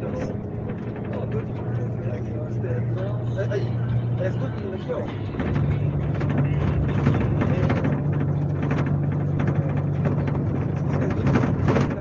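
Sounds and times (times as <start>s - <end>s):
diesel bus engine humming: 0.0s - 12.0s
road and body noise: 0.0s - 12.0s.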